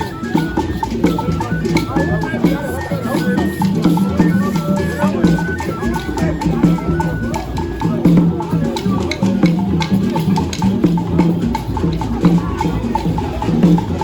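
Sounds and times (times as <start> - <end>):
drums: 0.0 - 14.0.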